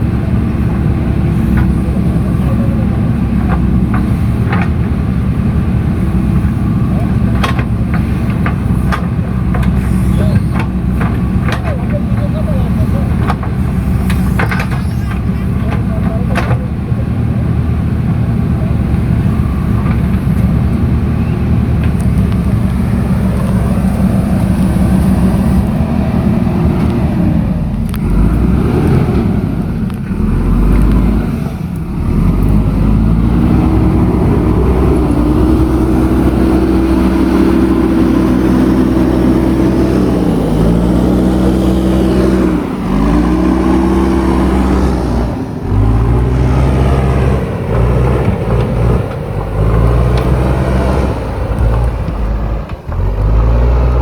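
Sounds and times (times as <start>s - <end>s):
diesel engine under load: 0.0s - 54.0s.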